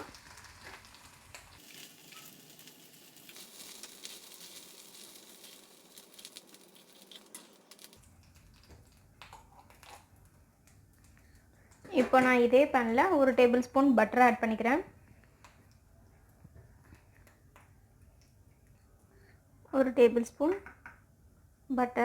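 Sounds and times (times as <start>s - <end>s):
food sizzling in oil: 0.0s - 8.0s.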